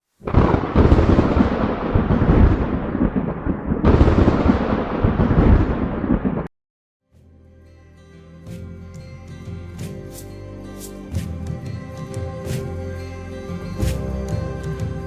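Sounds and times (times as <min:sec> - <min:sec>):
deep rumbling noise: 0:00.2 - 0:06.5.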